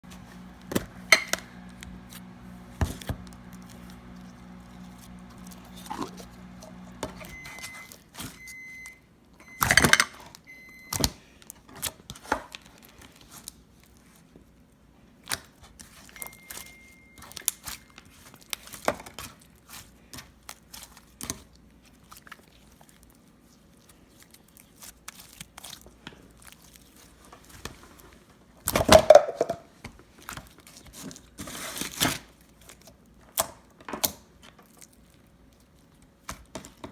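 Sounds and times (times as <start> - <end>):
low steady hum: 0.0 - 11.5.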